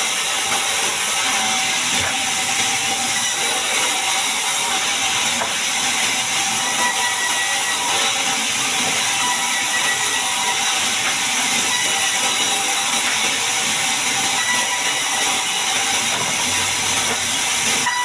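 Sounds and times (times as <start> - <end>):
bandsaw blade cutting log: 0.0 - 18.0.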